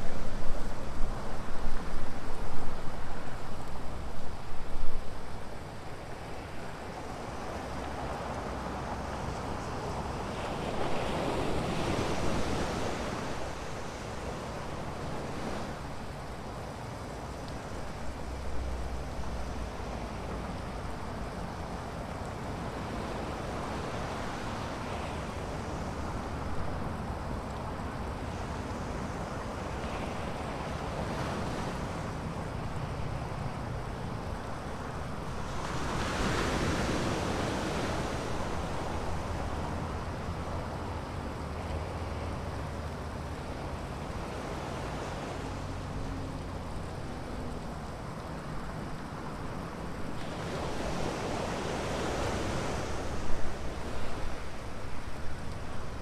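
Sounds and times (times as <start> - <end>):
ocean surf breaking: 48.8 - 56.0.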